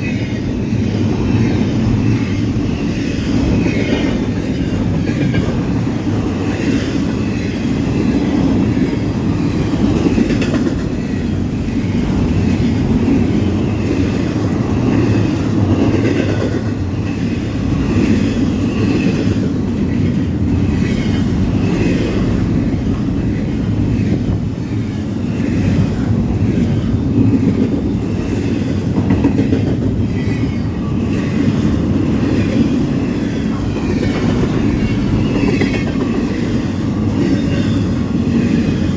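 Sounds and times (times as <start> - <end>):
freight train rumbling past: 0.0 - 38.9.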